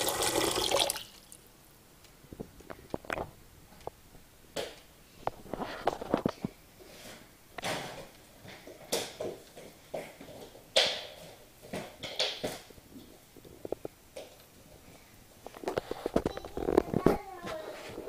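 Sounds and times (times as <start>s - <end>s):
faucet dripping and gurgling: 0.0s - 1.4s.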